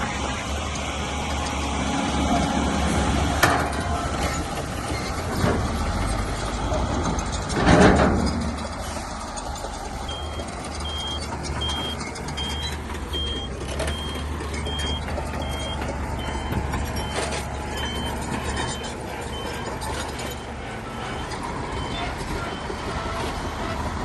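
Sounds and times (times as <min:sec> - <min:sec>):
diesel engine running: 0:00.0 - 0:24.0
reversing alarm beeping: 0:10.0 - 0:23.9.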